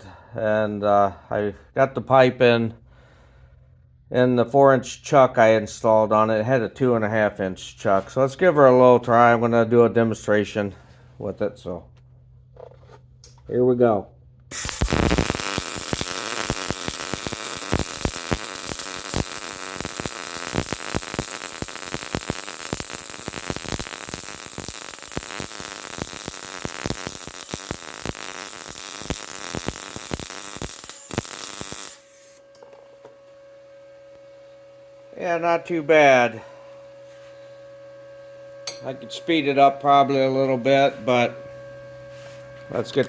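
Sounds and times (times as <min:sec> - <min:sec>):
steady hum with held tone: 0:11.8 - 0:43.0
welding arc crackling sizzle: 0:14.5 - 0:33.4, 0:38.4 - 0:43.0.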